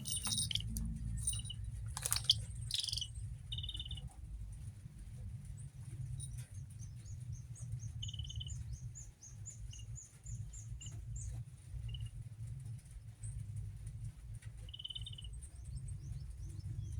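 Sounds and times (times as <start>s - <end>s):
buzzy bird trill: 0.0s - 4.0s
steady low rumble: 0.0s - 4.0s
bird chirping: 0.0s - 4.1s, 6.0s - 12.1s, 14.6s - 16.9s.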